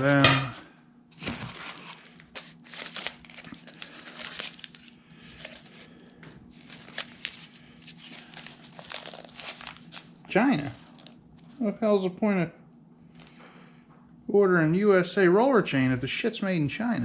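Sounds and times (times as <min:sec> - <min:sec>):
faint steady hum: 0:00.0 - 0:17.0
packaging crinkling: 0:01.2 - 0:11.6.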